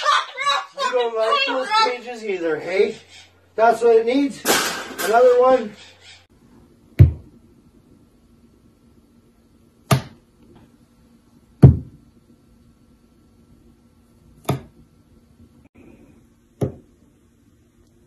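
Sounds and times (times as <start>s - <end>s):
faint steady hum: 5.9s - 18.0s
sharp knocks: 9.9s - 10.2s, 11.6s - 12.0s.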